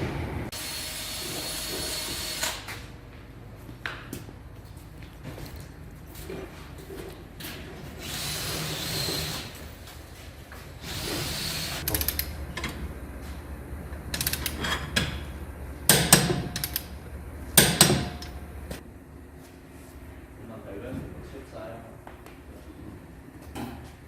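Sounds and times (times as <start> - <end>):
low hum: 11.8 - 21.5.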